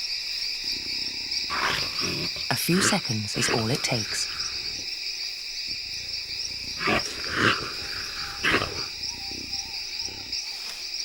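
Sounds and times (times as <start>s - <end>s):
insects chorus: 0.0s - 11.0s
jaguar growling: 0.6s - 4.9s, 5.7s - 10.7s.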